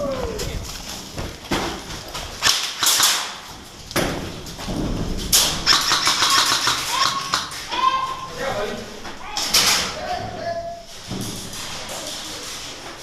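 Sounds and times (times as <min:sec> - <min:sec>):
sharp thuds and cracks: 0:00.4 - 0:07.7.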